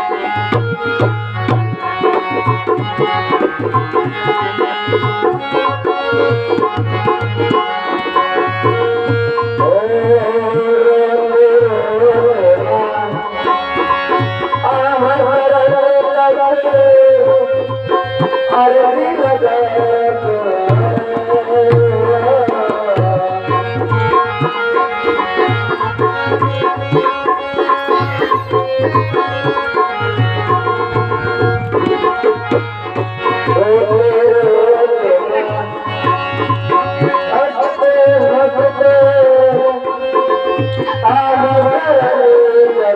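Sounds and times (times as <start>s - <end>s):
tabla rhythm: 0.0s - 42.9s
gliding melody: 26.6s - 32.2s.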